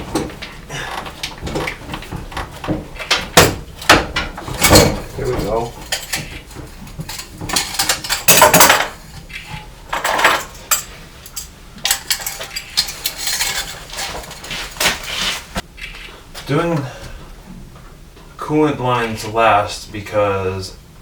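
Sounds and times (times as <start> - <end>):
metal tools clinking: 0.0 - 15.2.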